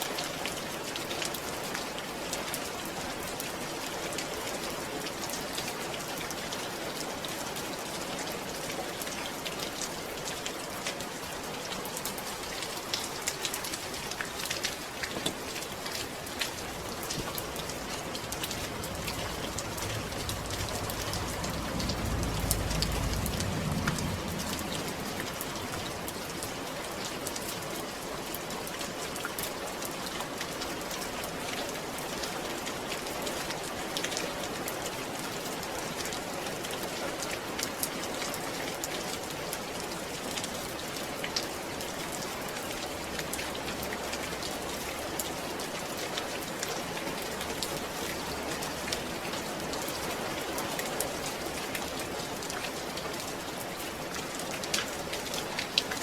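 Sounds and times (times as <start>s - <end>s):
rain pattering on a surface: 0.0s - 56.0s
low rumble: 16.5s - 26.7s.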